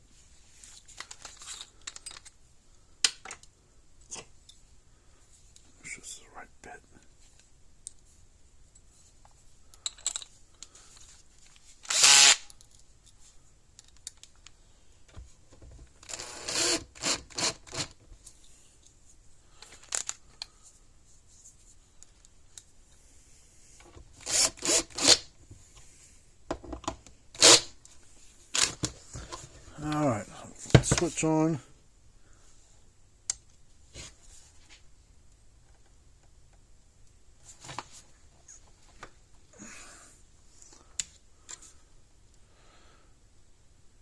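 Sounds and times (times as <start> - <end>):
cordless drill driving screws: 11.8 - 12.4, 16.0 - 17.9, 24.2 - 25.2, 27.4 - 27.6.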